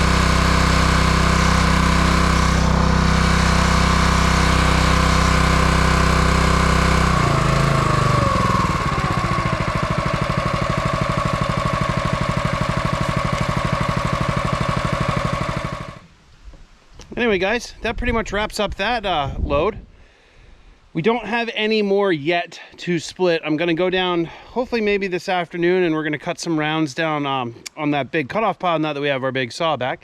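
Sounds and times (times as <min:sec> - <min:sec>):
small gas engine running: 0:00.0 - 0:16.1.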